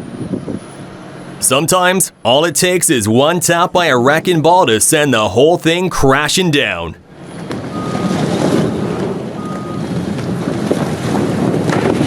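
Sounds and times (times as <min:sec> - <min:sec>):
wind noise on microphone: 0:00.0 - 0:00.8, 0:07.8 - 0:12.0.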